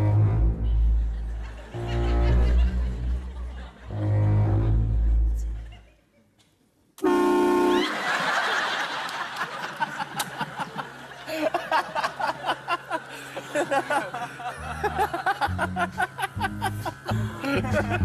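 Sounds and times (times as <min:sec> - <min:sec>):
music with low bass line: 0:00.0 - 0:05.7, 0:14.6 - 0:18.0
loud truck horn blast: 0:07.0 - 0:07.9.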